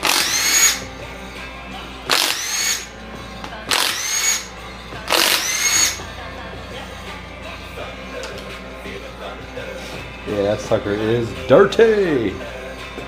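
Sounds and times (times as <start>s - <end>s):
power drill motor whine: 0.0s - 0.9s, 2.1s - 3.0s, 3.7s - 6.1s.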